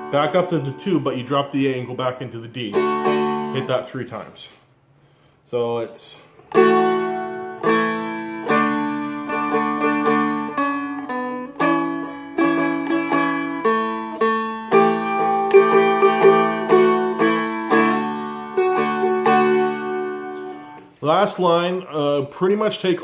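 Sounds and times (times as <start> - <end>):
fretted dulcimer picked and strummed: 2.6 - 3.8, 6.5 - 20.9.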